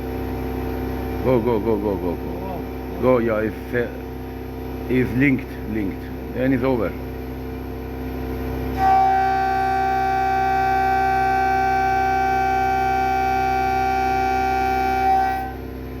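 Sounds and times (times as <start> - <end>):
machine hum: 0.0 - 16.0
buzzer alarm tone: 8.8 - 15.6.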